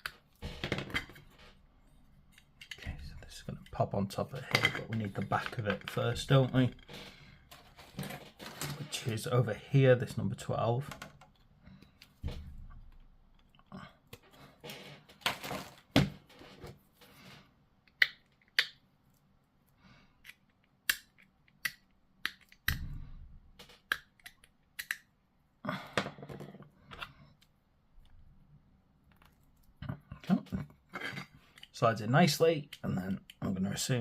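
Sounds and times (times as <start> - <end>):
plastic parts clicking: 2.3 - 6.9, 23.6 - 25.1
plastic scraping rustles: 4.1 - 9.2, 14.2 - 17.4.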